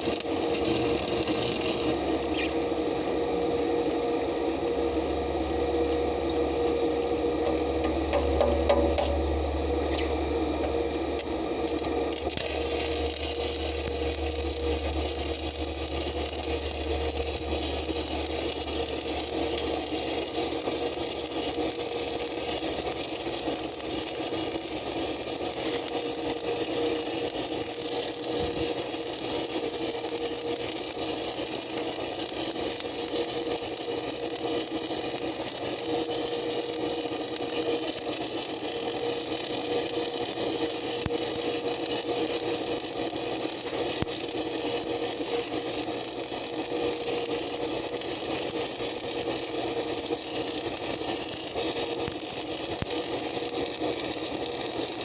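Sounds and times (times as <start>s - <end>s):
steady hum: 0.0s - 27.5s
welding arc crackling hiss: 0.0s - 55.0s.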